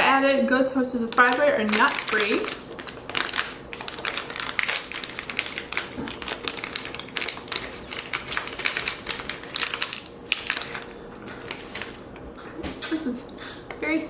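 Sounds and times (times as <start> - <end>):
plastic snack pouch crinkling: 1.0 - 12.0.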